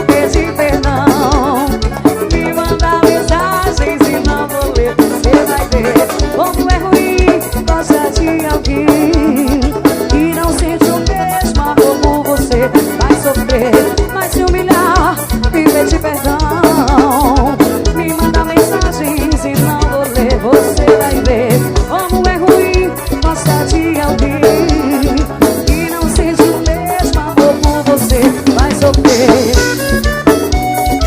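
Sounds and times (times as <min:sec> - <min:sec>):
drum kit beat: 0:00.0 - 0:31.0
wavering melody line: 0:00.0 - 0:31.0.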